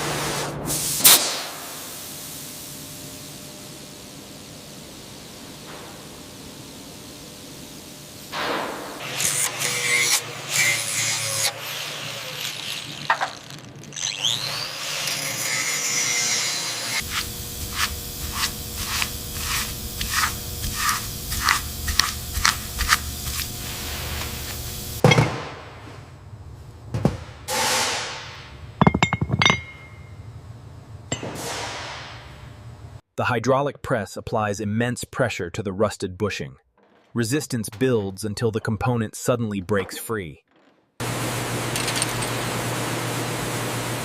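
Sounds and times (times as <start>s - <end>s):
steady machine hum: 17.0s - 25.3s.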